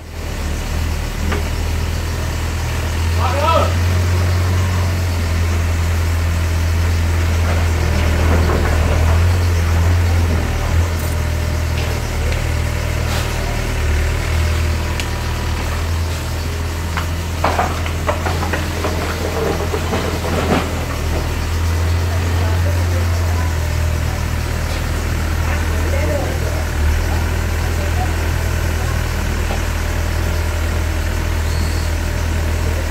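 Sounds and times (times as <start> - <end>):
excavator diesel engine humming: 0.0 - 32.9
knocks and clatters: 16.8 - 21.8.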